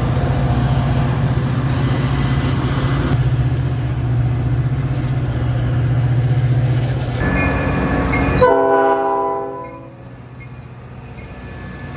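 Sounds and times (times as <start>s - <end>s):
train rumbling past: 0.0s - 11.9s
train horn chord: 7.2s - 10.2s.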